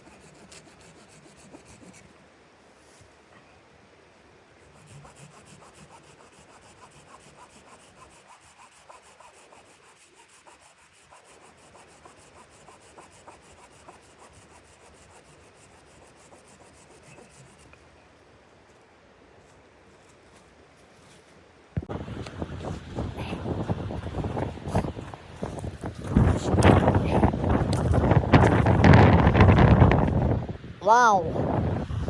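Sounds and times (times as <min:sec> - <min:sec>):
rapid scraping strokes: 0:04.7 - 0:17.8.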